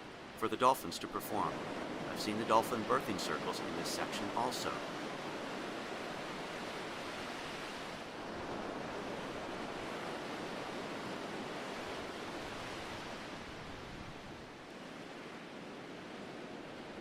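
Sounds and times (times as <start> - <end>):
surf breaking on beach: 0.5 - 15.6.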